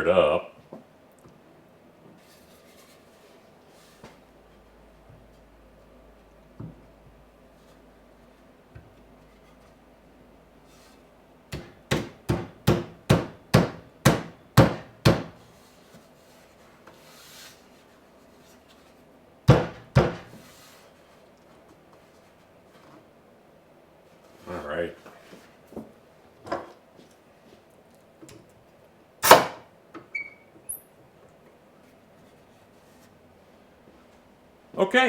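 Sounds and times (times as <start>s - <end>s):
hammer knocking on wood: 11.5s - 15.4s, 19.5s - 20.4s.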